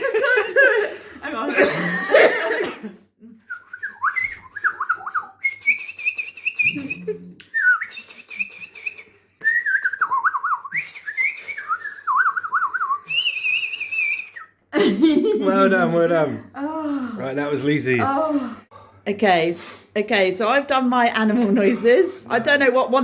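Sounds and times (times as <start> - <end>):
woman whistling birdsong: 3.5 - 14.6.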